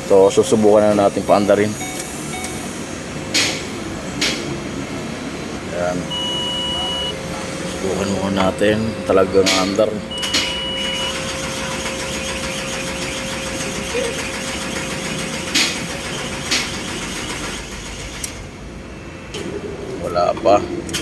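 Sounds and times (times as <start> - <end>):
engine cranking on starter: 9.4 - 18.6.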